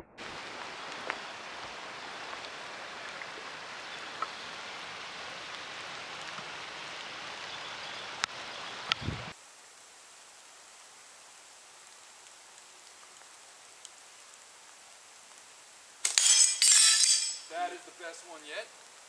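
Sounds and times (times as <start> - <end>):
steady outdoor hiss: 0.0 - 19.0.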